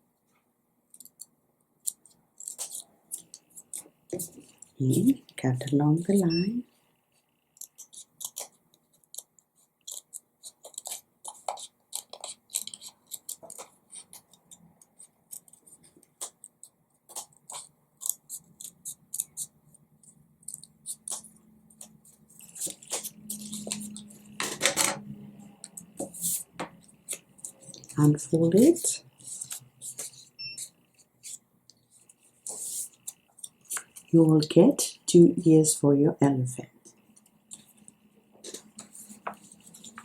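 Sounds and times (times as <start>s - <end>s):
scissors cutting paper: 1.8s - 5.2s, 7.6s - 24.8s
paper handling: 21.8s - 24.9s, 27.1s - 31.4s.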